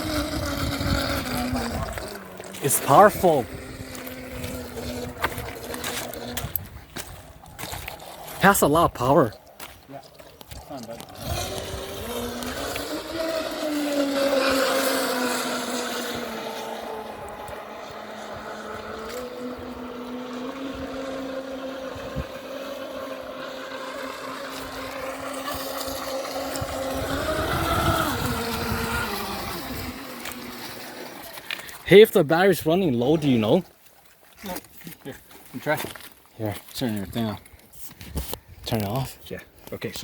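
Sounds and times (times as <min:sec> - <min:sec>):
remote-control boat motor whining: 0:00.0 - 0:08.6, 0:10.8 - 0:31.8.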